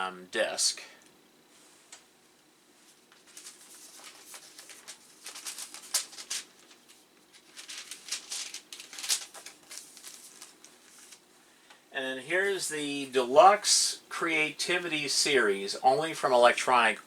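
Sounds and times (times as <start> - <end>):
plastic and paper crinkling: 2.8 - 11.3.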